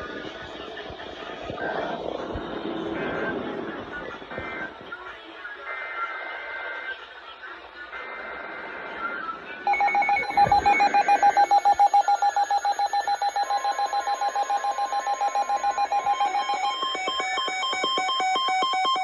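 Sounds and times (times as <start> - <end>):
pulsing electronic alert beep: 9.7 - 19.0
steady high alarm tone: 9.7 - 19.0.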